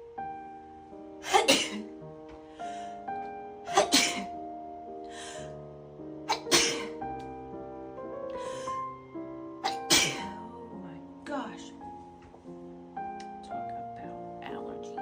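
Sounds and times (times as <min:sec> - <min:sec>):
breathy sounds: 0:02.4 - 0:03.2, 0:05.0 - 0:05.7, 0:08.2 - 0:09.0
person sneezing: 0:06.3 - 0:06.9.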